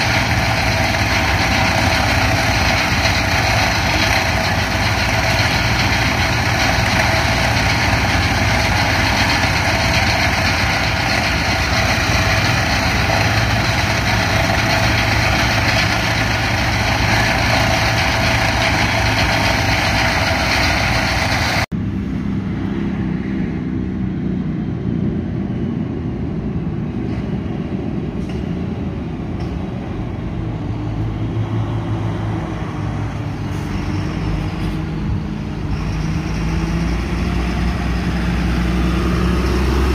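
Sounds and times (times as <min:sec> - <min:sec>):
low engine rumble: 0:00.0 - 0:31.4
combine harvester drone with whine: 0:00.0 - 0:31.7, 0:33.0 - 0:39.9.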